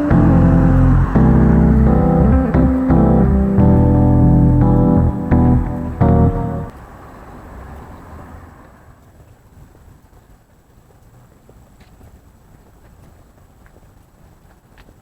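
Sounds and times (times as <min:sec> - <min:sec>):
traffic rumble: 0:00.0 - 0:06.7.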